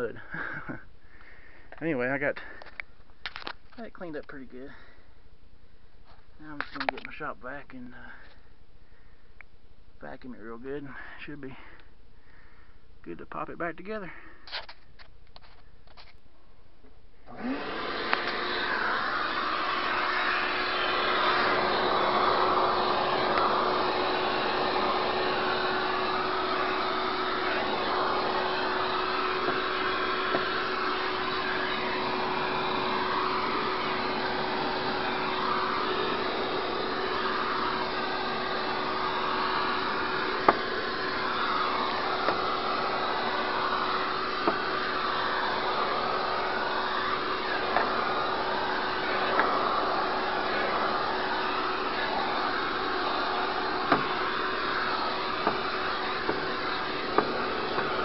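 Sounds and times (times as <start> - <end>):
shop vac running: 17.2 - 58.0.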